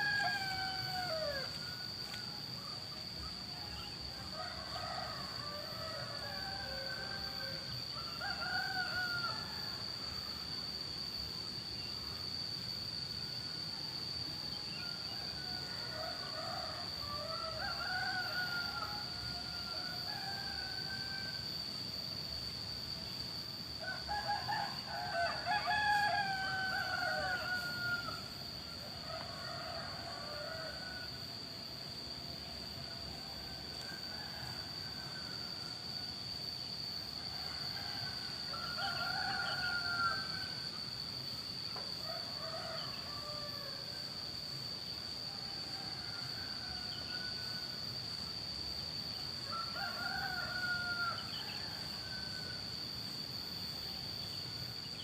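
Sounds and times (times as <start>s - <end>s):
roosters crowing: 0.0s - 2.5s, 4.1s - 9.6s, 15.0s - 21.6s, 23.8s - 31.2s, 37.2s - 41.1s, 49.4s - 52.6s.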